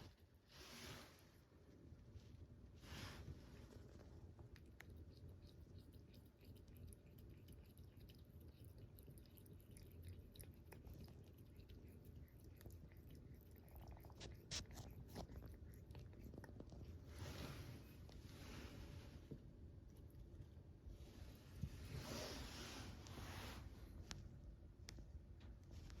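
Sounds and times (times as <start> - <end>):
cat lapping water: 4.4 - 18.1.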